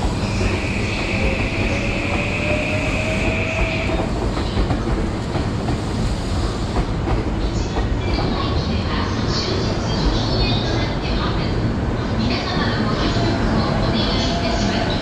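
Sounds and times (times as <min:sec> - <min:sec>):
train rumbling on rails: 0:00.0 - 0:15.0.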